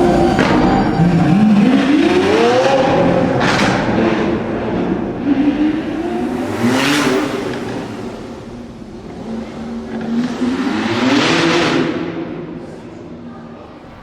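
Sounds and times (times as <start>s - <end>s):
sports car engine revving: 0.0s - 12.7s.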